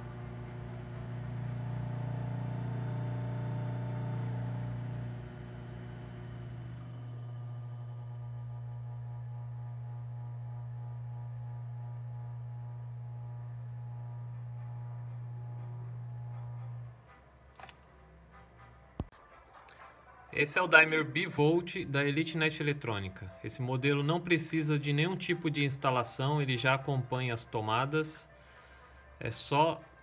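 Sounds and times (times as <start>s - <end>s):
electric motor hum: 0.0s - 17.0s.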